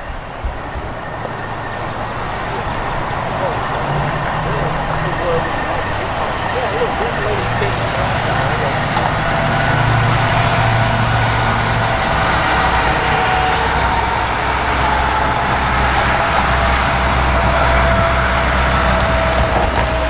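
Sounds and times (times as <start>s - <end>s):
vehicle engine running: 0.0s - 20.0s.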